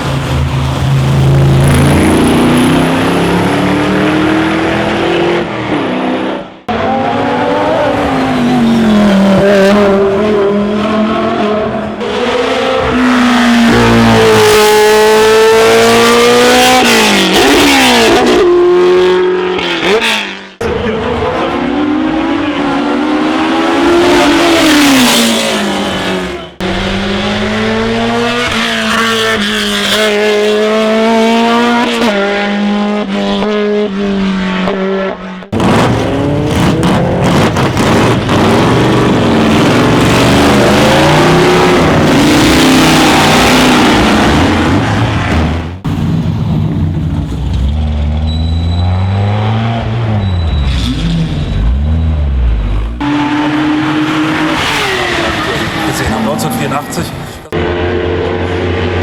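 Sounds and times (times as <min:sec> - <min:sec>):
racing car engines revving: 0:00.0 - 0:59.0
tyre squeal: 0:47.6 - 0:49.4, 0:50.0 - 0:52.9.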